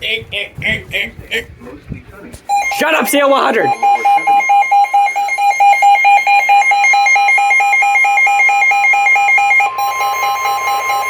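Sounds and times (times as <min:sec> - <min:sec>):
rapid electronic alarm beeping: 0:02.5 - 0:11.0
tone stepping up and down: 0:02.6 - 0:04.4.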